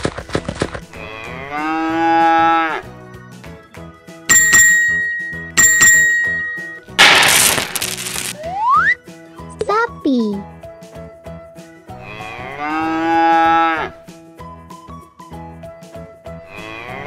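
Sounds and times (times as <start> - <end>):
cow mooing: 1.0 - 2.8, 12.0 - 14.0, 16.5 - 17.0
children's background music: 1.0 - 7.1, 7.8 - 17.0
ringing bell dings: 4.3 - 6.9.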